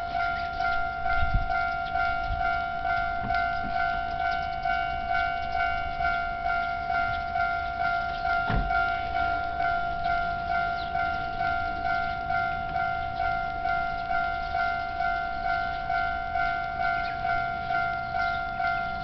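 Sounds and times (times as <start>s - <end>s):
level crossing warning bell ringing: 0.0s - 19.0s
low thump: 8.5s - 8.8s.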